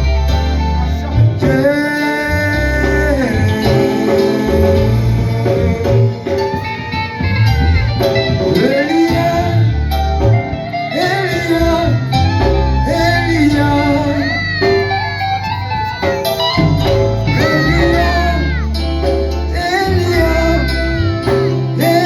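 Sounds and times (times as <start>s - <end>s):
gospel singing: 0.0s - 22.0s
instrumental backing with bass line: 0.0s - 22.0s.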